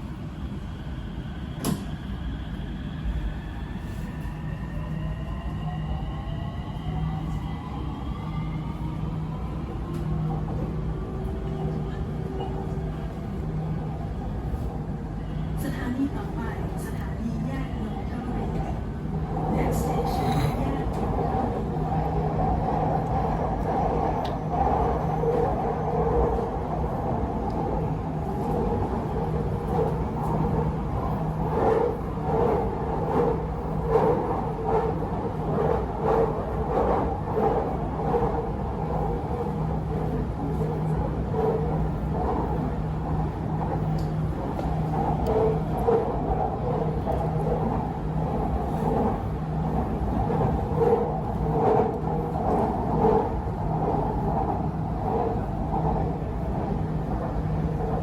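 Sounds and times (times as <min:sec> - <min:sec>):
train wheels rumbling on rails: 0:08.6 - 0:58.0.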